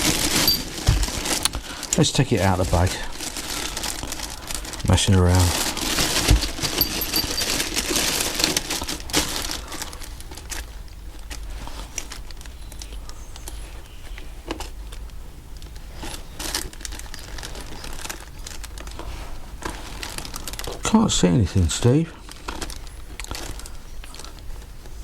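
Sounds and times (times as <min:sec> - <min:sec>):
small parts clicking and tapping: 0:00.0 - 0:01.5, 0:06.4 - 0:07.7
plastic bag rustling: 0:00.0 - 0:25.0.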